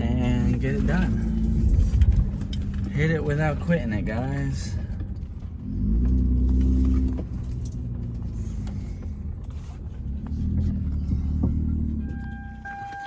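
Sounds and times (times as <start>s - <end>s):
car engine inside cabin: 0.0s - 13.0s.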